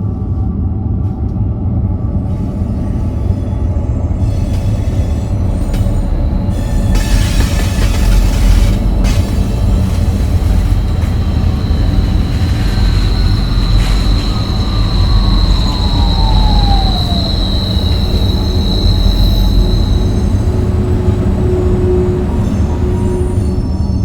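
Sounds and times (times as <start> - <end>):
low rumble: 0.0 - 24.0
high squealing tone: 2.5 - 24.0
downward gliding tone: 10.0 - 24.0.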